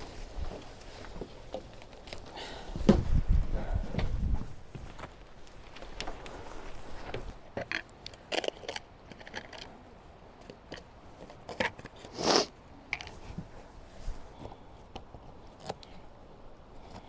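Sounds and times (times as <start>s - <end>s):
scraping rustle: 4.0s - 7.4s.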